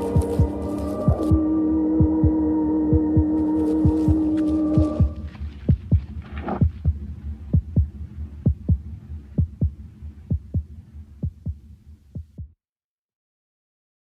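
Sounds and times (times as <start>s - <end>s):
low hum: 0.0s - 12.4s
heartbeat thumps: 0.0s - 12.6s.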